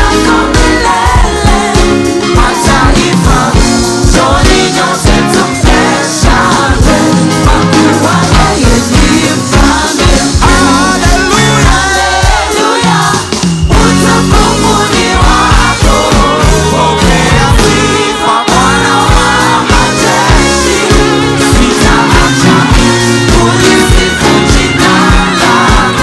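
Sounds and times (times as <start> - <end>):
band playing: 0.0 - 26.0
group of singers: 0.0 - 26.0
steady drum beat: 0.0 - 26.0.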